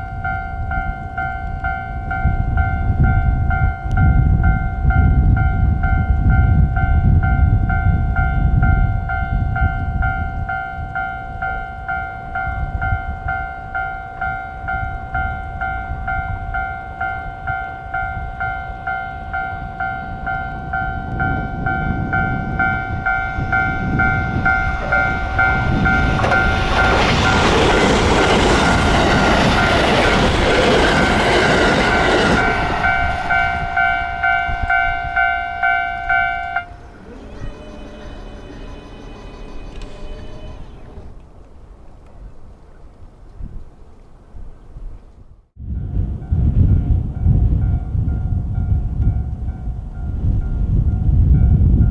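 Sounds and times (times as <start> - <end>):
level crossing electronic bell: 0.0 - 40.7
train passing: 0.0 - 42.1, 45.6 - 51.9.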